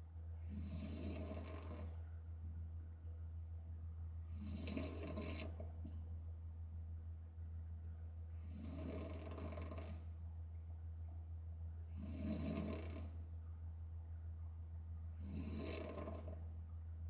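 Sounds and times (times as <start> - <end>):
steady low hum: 0.0 - 17.0
woman snoring: 0.4 - 2.0, 4.3 - 5.6, 8.4 - 10.0, 12.0 - 13.2, 15.2 - 16.4.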